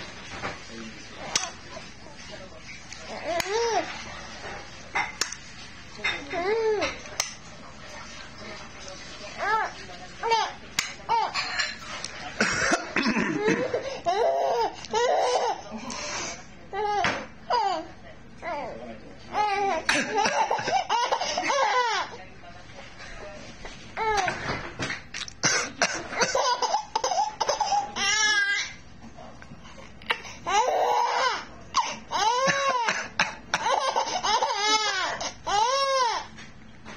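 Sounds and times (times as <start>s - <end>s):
person coughing: 12.4s - 13.8s, 25.4s - 26.4s
baby laughing: 13.3s - 15.7s, 19.3s - 22.2s, 26.0s - 28.7s, 30.2s - 36.3s.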